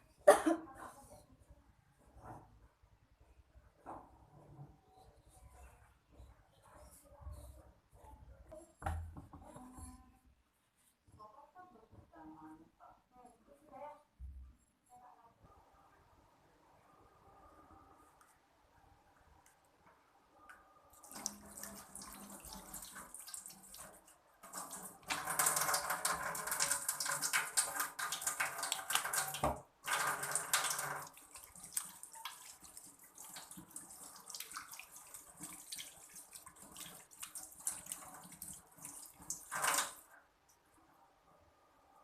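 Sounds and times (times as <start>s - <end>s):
tap water running into sink: 21.0s - 40.0s.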